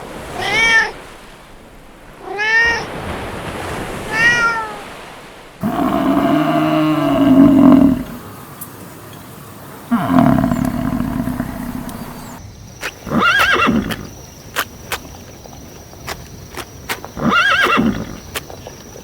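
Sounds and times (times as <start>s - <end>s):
horse neighing: 5.6s - 8.4s, 9.8s - 12.4s, 13.0s - 14.1s, 17.2s - 18.2s
low drawn-out animal call: 5.6s - 12.4s
hoof clops: 5.6s - 19.0s.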